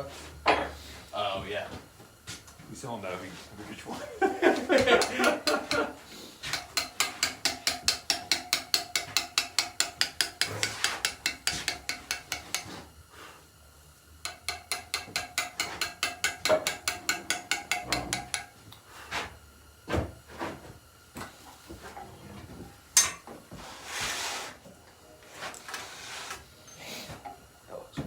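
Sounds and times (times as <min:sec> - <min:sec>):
mallet tapping chisel on stone: 0:04.8 - 0:12.8, 0:14.2 - 0:18.5.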